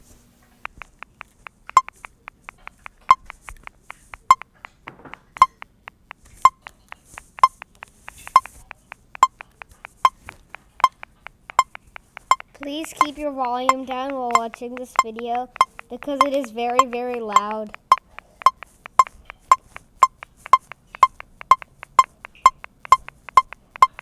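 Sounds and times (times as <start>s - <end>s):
metronome clicking: 0.6s - 24.0s.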